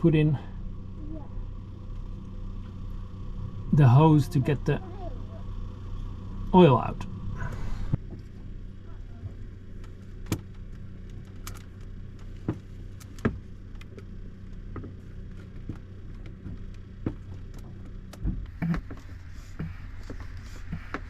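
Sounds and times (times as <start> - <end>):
steady low hum: 0.0 - 21.0
clicks and knocks of handling pump: 9.8 - 21.0.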